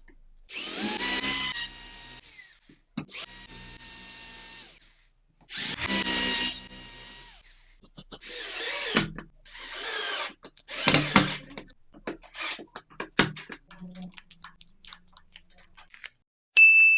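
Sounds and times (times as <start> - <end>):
electric drill whirring: 0.5 - 4.8, 5.5 - 7.6, 8.2 - 11.6, 12.2 - 12.6
clicks and small knocks: 10.4 - 16.2.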